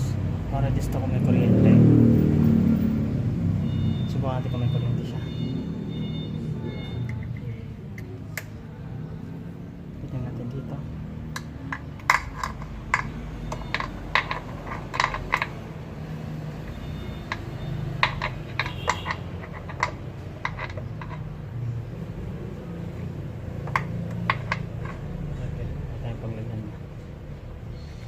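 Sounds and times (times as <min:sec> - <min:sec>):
metallic clicks and taps: 0:11.3 - 0:15.6, 0:16.7 - 0:21.3.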